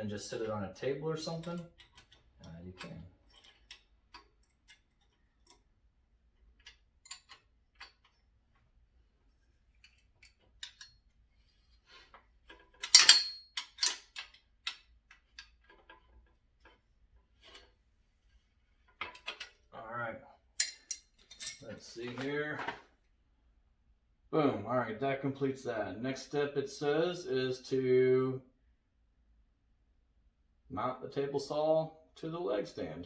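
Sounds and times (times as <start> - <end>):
metal tools clinking on steel stand: 1.2 - 5.7, 6.4 - 8.3, 9.8 - 11.1, 12.5 - 16.3, 20.6 - 21.8.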